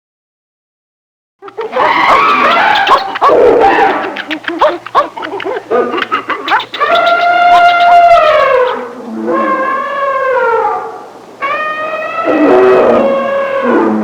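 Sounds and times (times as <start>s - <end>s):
overlapping animal calls: 1.4s - 14.0s.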